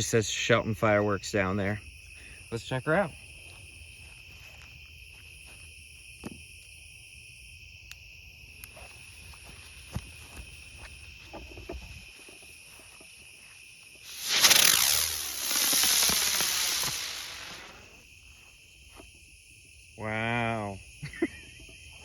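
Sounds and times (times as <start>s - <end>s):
crickets chirping: 0.0s - 22.0s
firework rushing hiss: 14.0s - 18.0s.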